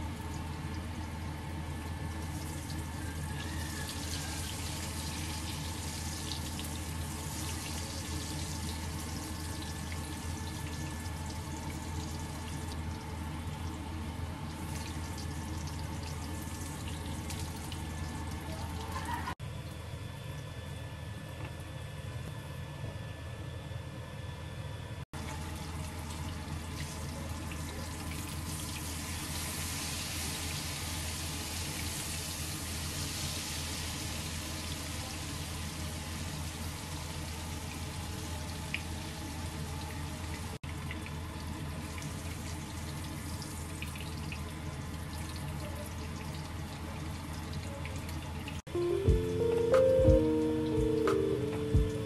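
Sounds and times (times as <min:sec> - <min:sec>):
low steady hum: 0:36.4 - 0:52.0.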